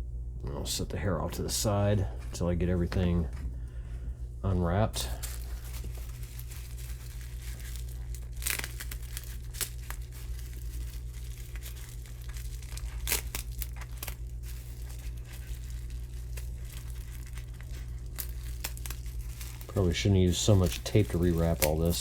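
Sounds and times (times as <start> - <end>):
wrapping crinkling: 4.7 - 22.0
packing tape tearing: 5.0 - 22.0.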